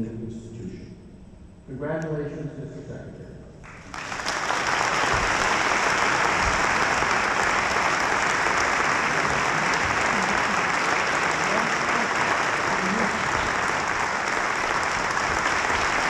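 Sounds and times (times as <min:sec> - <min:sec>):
audience applauding: 0:03.6 - 0:16.0.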